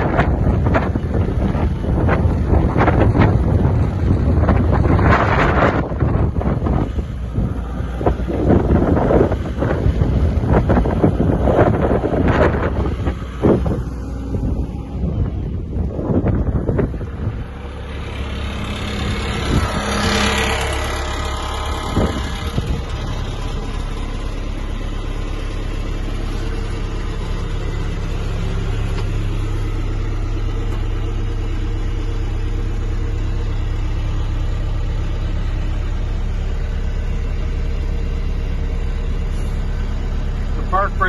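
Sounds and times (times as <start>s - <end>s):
diesel engine running: 0.0s - 41.0s.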